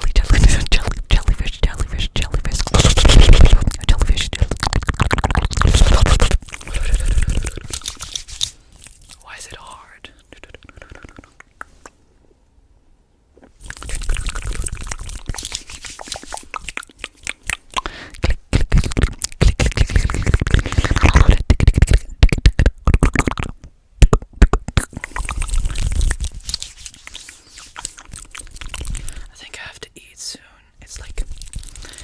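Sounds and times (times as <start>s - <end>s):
mouth clicks and smacks: 0.0s - 12.1s, 13.3s - 32.0s.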